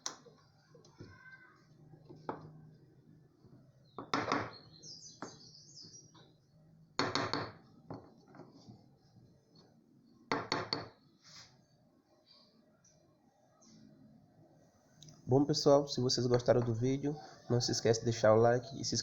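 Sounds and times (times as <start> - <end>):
faint bird chirps: 3.7 - 6.7, 11.0 - 15.1.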